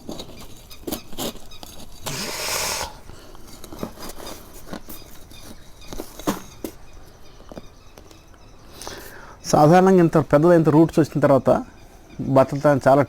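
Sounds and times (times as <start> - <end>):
small knocks and scratches: 0.0 - 2.2, 3.3 - 8.2
hands rustling soil: 0.0 - 8.0.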